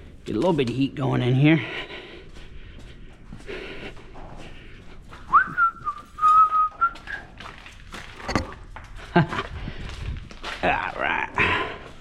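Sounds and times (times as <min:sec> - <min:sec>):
person whistling: 0:05.3 - 0:07.2.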